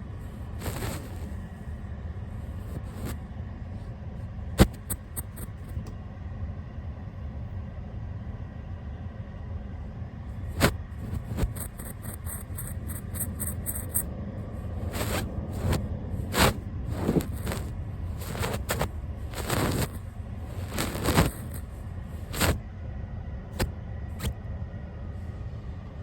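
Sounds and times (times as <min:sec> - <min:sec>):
steady low rumble: 0:00.0 - 0:26.0
brush bristles on microphone: 0:00.4 - 0:01.3, 0:04.6 - 0:05.6, 0:10.6 - 0:14.1, 0:14.8 - 0:22.6.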